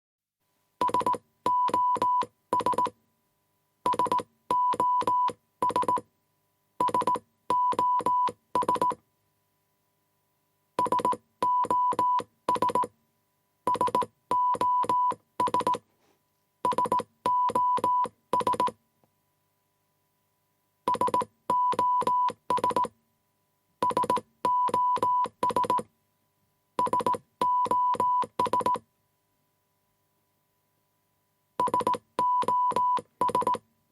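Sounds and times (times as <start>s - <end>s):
morse code beeps: 0.8s - 3.0s, 3.9s - 6.1s, 6.8s - 9.0s, 10.8s - 12.9s, 13.7s - 15.8s, 16.6s - 18.8s, 20.9s - 23.0s, 23.8s - 25.9s, 26.8s - 28.8s, 31.6s - 33.6s.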